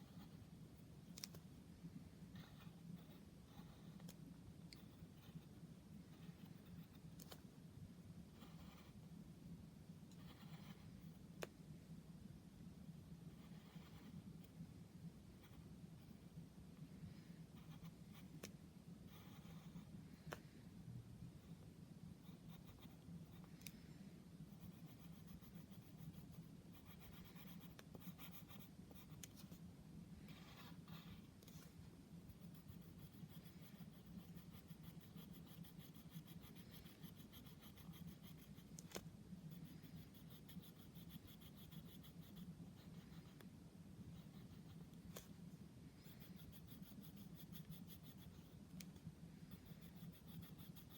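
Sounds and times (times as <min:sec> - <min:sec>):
pencil scratching on paper: 0:00.0 - 0:00.5, 0:02.3 - 0:04.2, 0:08.3 - 0:09.1, 0:10.2 - 0:11.2, 0:13.3 - 0:14.5, 0:17.5 - 0:18.4, 0:19.1 - 0:19.9, 0:22.2 - 0:23.5, 0:24.5 - 0:29.6, 0:30.2 - 0:43.4, 0:44.0 - 0:45.4, 0:46.0 - 0:50.9
low steady hum: 0:00.0 - 0:50.9.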